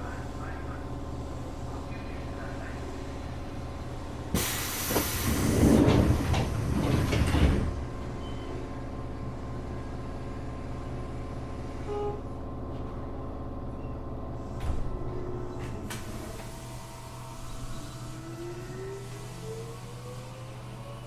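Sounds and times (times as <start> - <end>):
low hum of train car: 0.0 - 21.0
train doors hissing: 4.3 - 7.7, 15.8 - 18.2.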